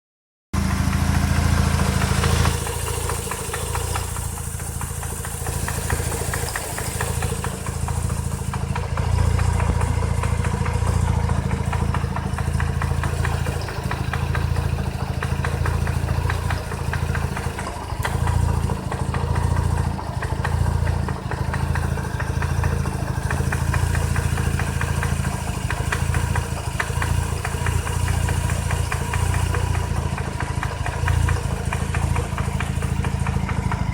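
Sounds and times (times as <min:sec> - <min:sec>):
engine knocking: 0:00.6 - 0:33.9.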